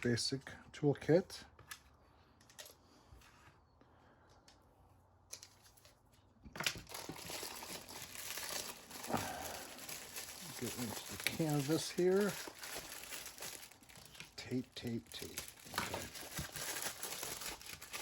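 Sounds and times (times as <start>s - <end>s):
plastic wrapping crinkling: 5.3s - 18.0s.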